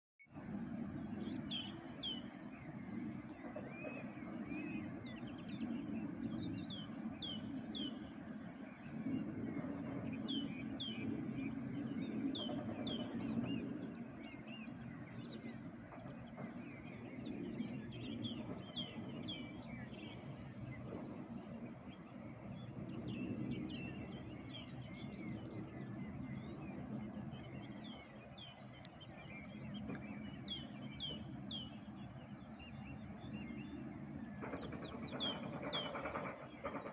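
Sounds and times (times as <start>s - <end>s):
low outdoor rumble: 0.3s - 36.9s
songbird singing: 0.3s - 36.9s.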